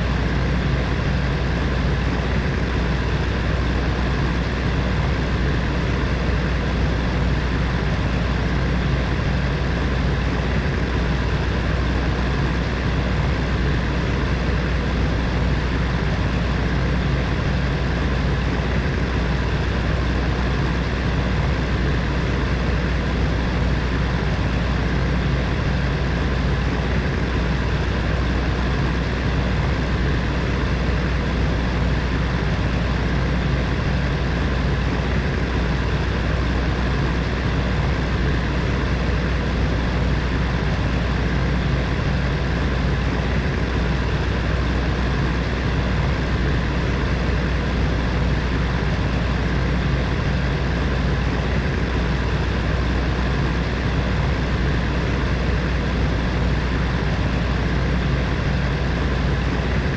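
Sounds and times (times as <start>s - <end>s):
electric heater fan whooshing hum: 0.0s - 59.9s.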